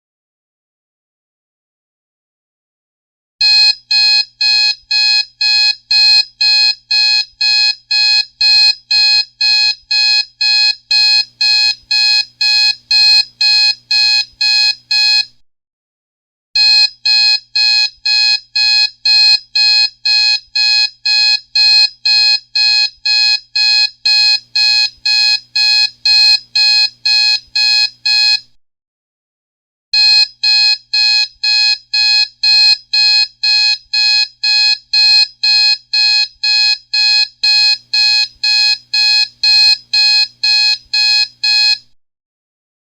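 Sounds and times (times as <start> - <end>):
alarm clock beeping: 3.4 - 15.2, 20.6 - 28.4, 30.0 - 41.8.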